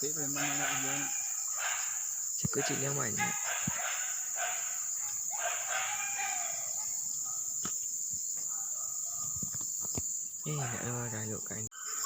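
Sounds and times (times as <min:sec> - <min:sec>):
high insect drone: 0:00.0 - 0:12.0
drawn-out animal calls: 0:00.3 - 0:07.0.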